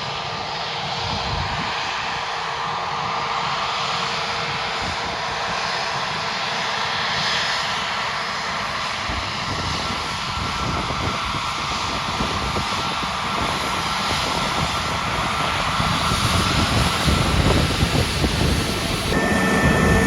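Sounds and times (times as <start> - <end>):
airliner engines rushing: 0.0 - 20.0.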